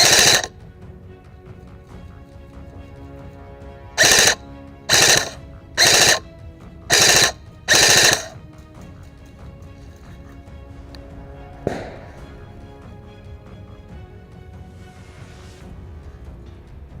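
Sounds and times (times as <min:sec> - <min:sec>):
airsoft gun bursts: 0:00.0 - 0:00.5, 0:04.0 - 0:06.3, 0:06.9 - 0:08.4
background music: 0:00.0 - 0:17.0.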